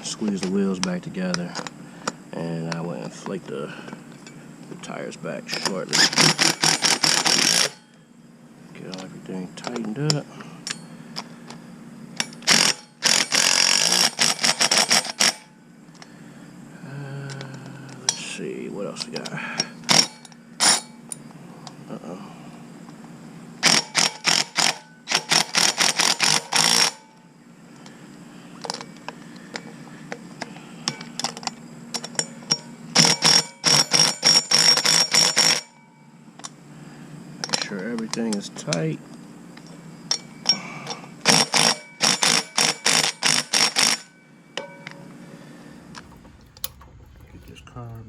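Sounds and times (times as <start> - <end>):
ratchet wrench ratcheting: 6.0 - 7.8, 12.2 - 15.4, 23.6 - 27.0, 41.3 - 44.1
metal clink ringing: 40.1 - 40.6, 44.0 - 45.2.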